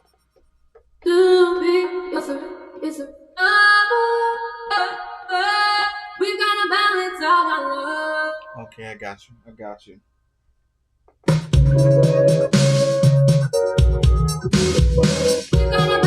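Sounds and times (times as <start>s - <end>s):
woman singing: 1.0s - 8.6s, 15.6s - 16.0s.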